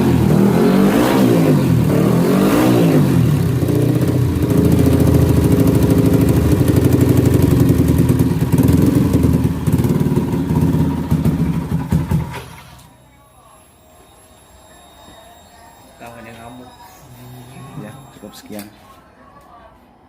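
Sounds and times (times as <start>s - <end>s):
motorcycle engine revving and idling: 0.0s - 12.9s.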